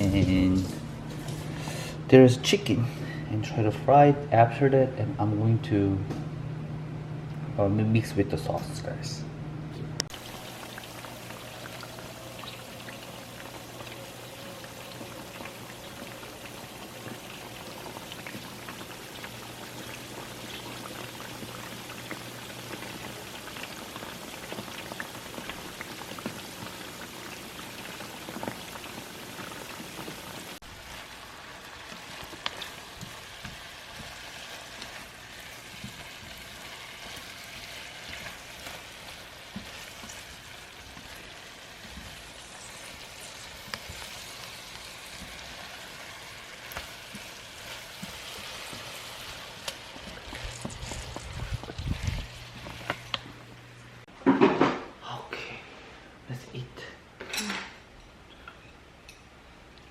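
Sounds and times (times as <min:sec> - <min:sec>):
chicken sizzling in hot oil: 0:10.1 - 0:53.4.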